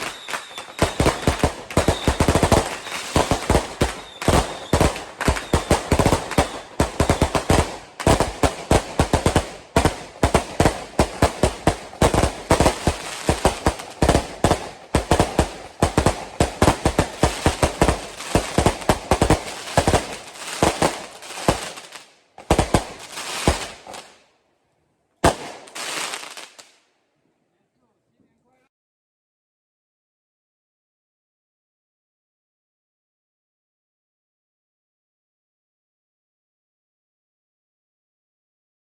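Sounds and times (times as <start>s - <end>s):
fireworks bangs: 0.0s - 24.2s, 25.2s - 26.8s.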